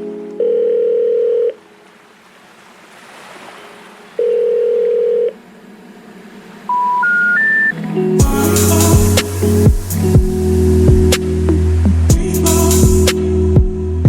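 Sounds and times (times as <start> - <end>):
telephone ringing tones: 0.4 - 1.6, 4.2 - 5.4
rising telephone beeps: 4.2 - 5.4, 6.7 - 7.8
soft line hiss: 7.8 - 13.5.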